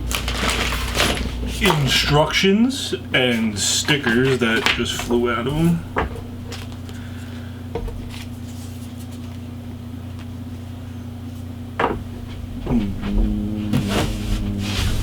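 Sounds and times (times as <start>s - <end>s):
low hum: 11.8s - 15.0s.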